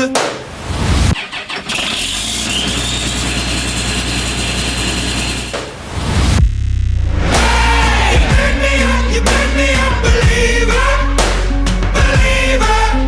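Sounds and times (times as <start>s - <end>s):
diesel engine droning: 1.2s - 5.9s
high whine: 2.1s - 6.4s.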